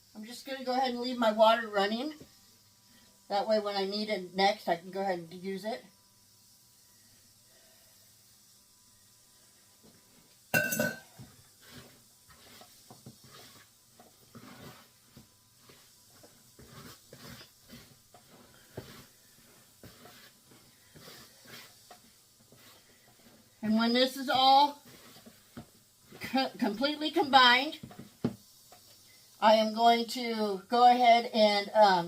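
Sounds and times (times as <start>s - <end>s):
loud ringing clank: 10.6s - 11.1s
dough whisk stirring dough: 11.0s - 30.2s
whisk clicking and scraping bowl: 11.2s - 29.0s.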